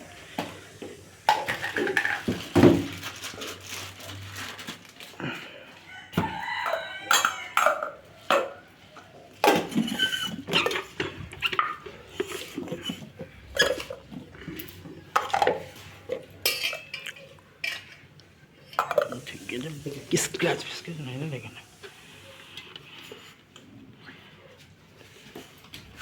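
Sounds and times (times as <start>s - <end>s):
metal jars clinking: 1.3s - 2.6s, 6.6s - 19.5s.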